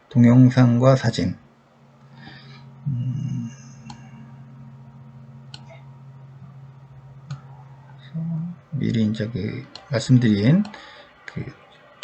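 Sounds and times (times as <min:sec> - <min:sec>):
low electrical hum: 0:00.0 - 0:12.0
low vocal murmur: 0:02.1 - 0:04.9.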